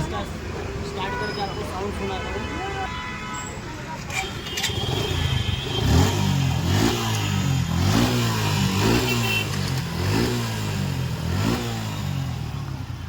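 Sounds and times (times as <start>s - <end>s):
motorcycle engine revving: 4.2s - 13.0s.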